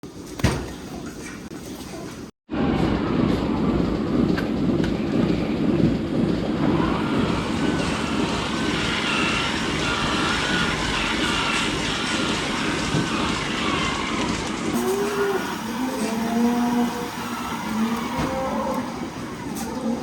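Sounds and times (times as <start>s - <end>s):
farm machinery rumbling: 4.1s - 20.0s.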